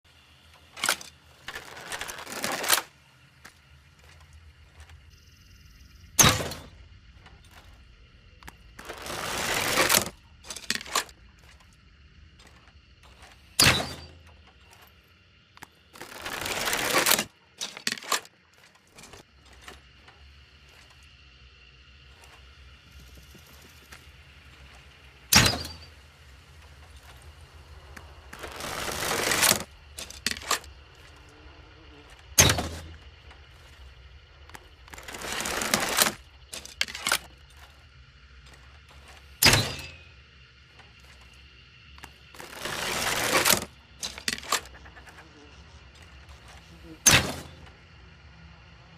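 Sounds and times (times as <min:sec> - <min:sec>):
small clicks: 0:00.4 - 0:05.2, 0:06.2 - 0:21.3.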